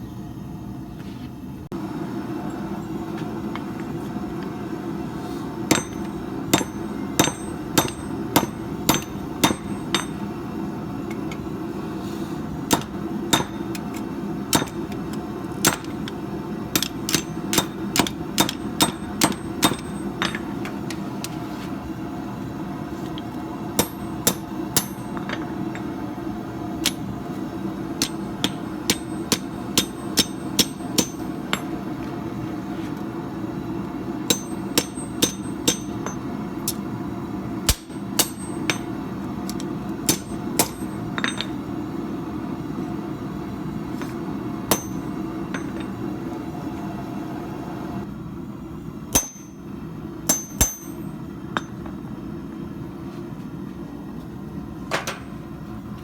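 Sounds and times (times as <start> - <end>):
hammer striking steel on anvil: 5.7 - 10.4, 12.7 - 21.2, 23.1 - 26.1, 26.8 - 27.2, 27.9 - 32.0, 34.3 - 36.9, 37.6 - 41.6, 44.0 - 46.0, 49.1 - 49.7, 50.3 - 51.9.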